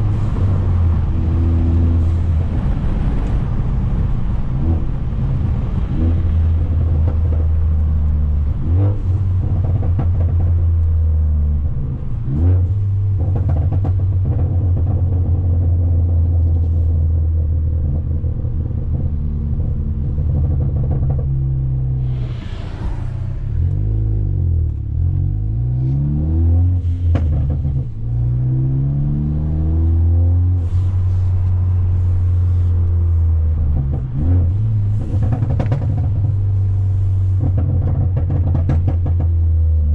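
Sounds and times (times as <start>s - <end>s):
car exhaust droning while driving: 0.0s - 39.9s
sharp exhaust pops: 12.4s - 16.8s, 26.8s - 28.3s, 30.6s - 39.6s
brief hiss: 22.0s - 24.1s.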